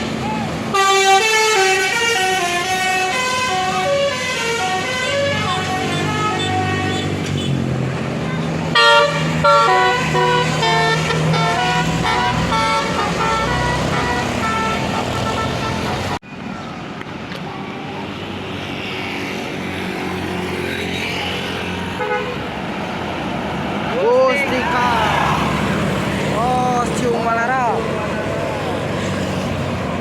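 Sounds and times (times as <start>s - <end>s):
bus engine: 0.0s - 30.0s
bus musical horn tune: 0.7s - 7.6s, 8.7s - 16.2s, 22.0s - 22.4s
large vehicle passing: 17.8s - 30.0s.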